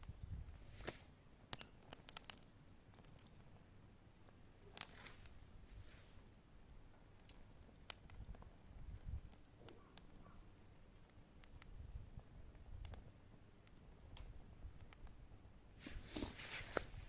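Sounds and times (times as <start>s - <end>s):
fire pops and snaps: 0.0s - 3.4s, 4.2s - 5.4s, 6.6s - 10.3s, 10.9s - 15.2s
campfire crackling: 0.0s - 17.0s.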